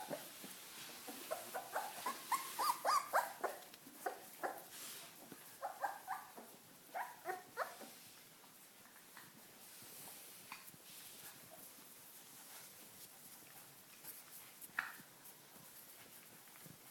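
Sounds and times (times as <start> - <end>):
puppies yipping and whimpering: 1.0 - 4.6, 5.6 - 7.9.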